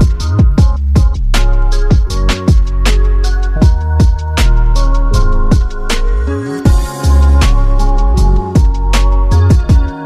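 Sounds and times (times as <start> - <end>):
rising bass sweep: 0.0 - 9.9
electronic music with heavy bass: 0.0 - 10.0
drum hit: 6.7 - 8.8.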